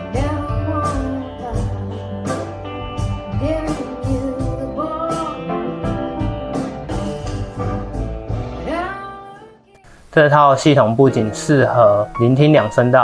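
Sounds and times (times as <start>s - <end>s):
song with guitar and drums: 0.0s - 8.7s.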